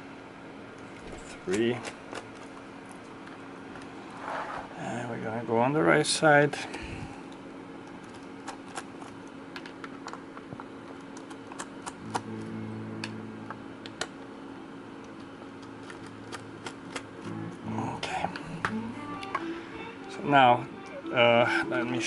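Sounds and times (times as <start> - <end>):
low hum: 12.0 - 21.4.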